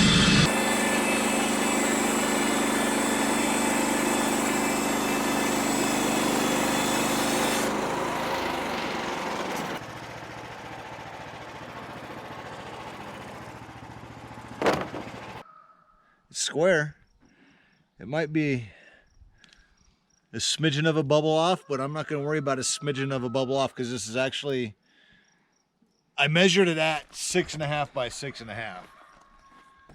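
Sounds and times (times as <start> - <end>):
small gasoline engine running: 0.0 - 15.4.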